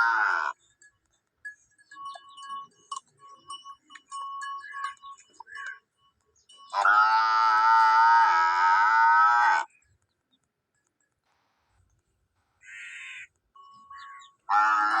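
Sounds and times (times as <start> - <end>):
buffalo bellowing: 0.0 - 0.6, 6.8 - 9.7, 14.0 - 15.0.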